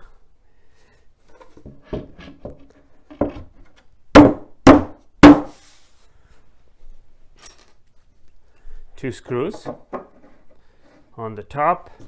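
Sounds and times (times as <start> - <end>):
knocking on wooden panels: 1.7 - 5.6.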